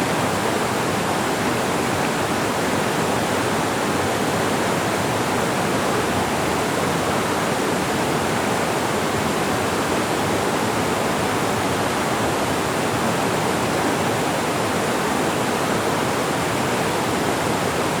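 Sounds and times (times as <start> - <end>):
stream rushing over rocks: 0.0 - 18.0.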